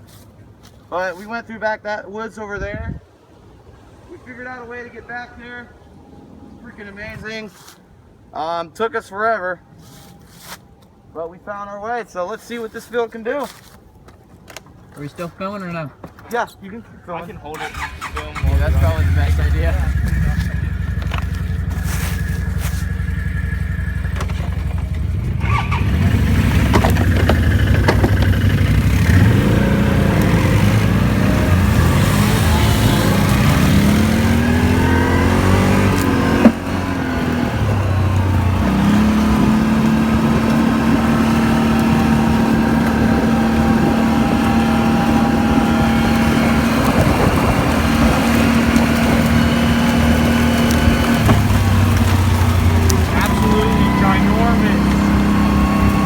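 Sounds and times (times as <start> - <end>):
atv engine revving: 17.6 - 56.0.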